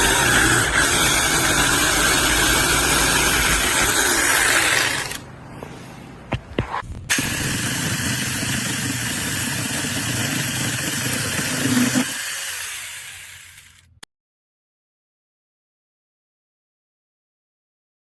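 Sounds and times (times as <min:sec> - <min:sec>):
cordless chainsaw running: 0:00.0 - 0:05.2, 0:07.1 - 0:13.9.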